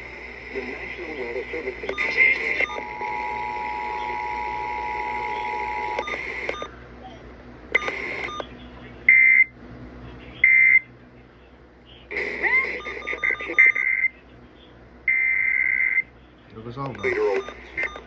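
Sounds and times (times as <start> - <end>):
buzzy digital data bursts and beeps: 1.9 - 6.7, 12.3 - 13.9
two-tone attention signal: 17.0 - 18.0.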